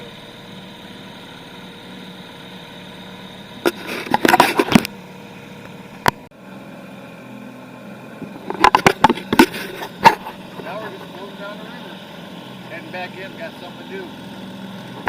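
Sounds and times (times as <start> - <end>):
outboard motor running: 0.0 - 15.0
sharp knocks and crackles: 3.6 - 5.0, 8.2 - 10.7.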